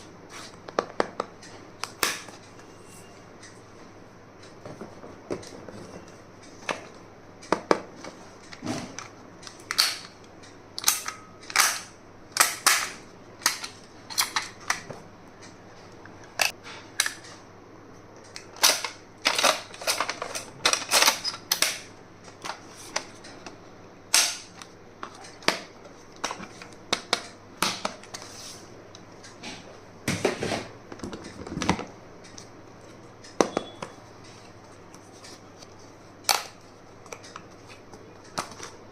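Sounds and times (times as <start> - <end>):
stationery and packaging clicks: 6.4 - 15.0, 18.2 - 28.3.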